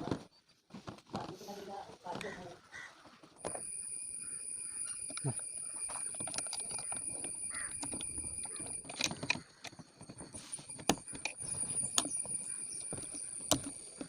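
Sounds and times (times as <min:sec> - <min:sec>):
faint steady high tone: 0:03.2 - 0:14.0
small tools and metal parts clicking: 0:03.4 - 0:14.0.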